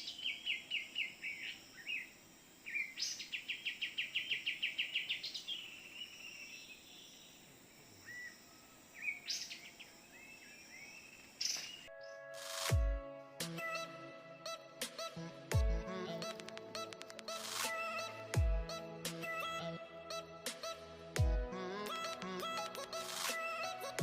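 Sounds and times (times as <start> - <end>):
songbird chirping: 0.0 - 12.5.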